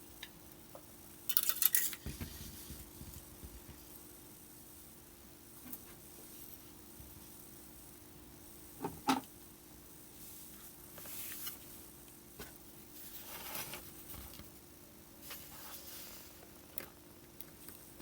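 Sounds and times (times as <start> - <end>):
faint steady hum: 0.0 - 18.0
soft rustling and scraping: 2.0 - 4.0, 10.2 - 11.8, 12.4 - 14.6, 15.2 - 16.5.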